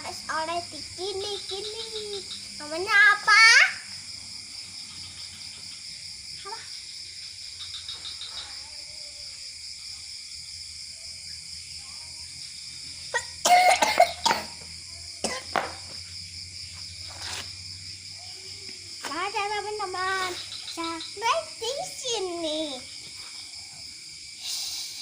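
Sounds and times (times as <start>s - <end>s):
child coughing: 13.1s - 14.6s, 15.2s - 15.6s.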